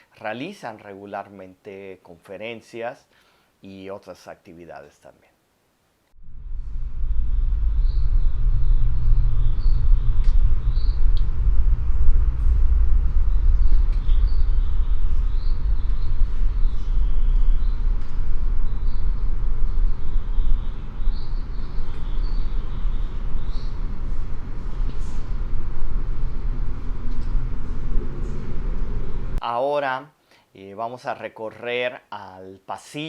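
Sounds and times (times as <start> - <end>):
low hall ambience rumble: 6.2 - 29.4
faint high chirps: 12.4 - 29.4.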